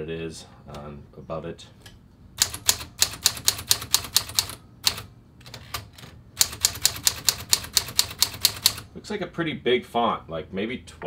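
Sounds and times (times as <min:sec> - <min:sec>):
manual typewriter key strikes: 0:02.4 - 0:08.8.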